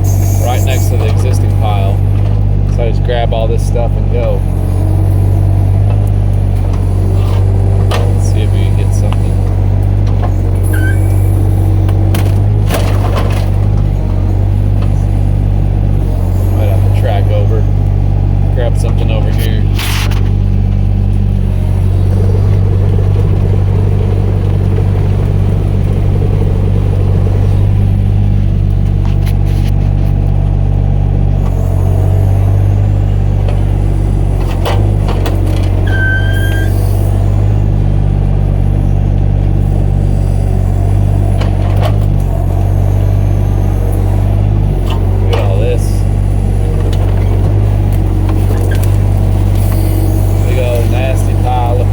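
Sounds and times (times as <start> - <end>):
excavator diesel engine running: 0.0 - 51.9
high squeak: 10.6 - 11.8, 35.8 - 37.0.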